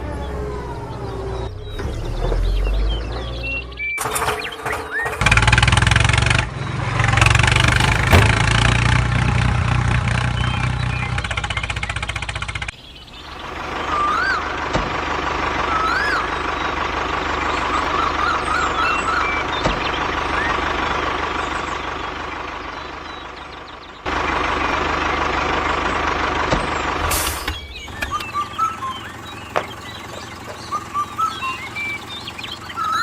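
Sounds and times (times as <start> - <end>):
short chirping squeaks: 27.0 - 33.0.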